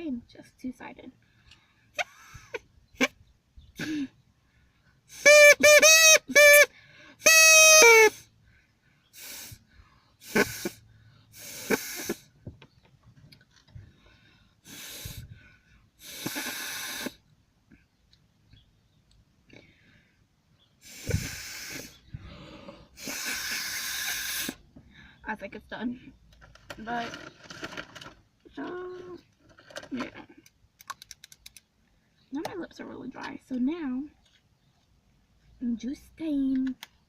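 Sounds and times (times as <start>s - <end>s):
straw reed horn tooting: 5.1s - 8.2s, 10.2s - 10.8s
breathy puffs of air: 8.0s - 12.4s, 13.8s - 17.2s, 20.8s - 25.2s.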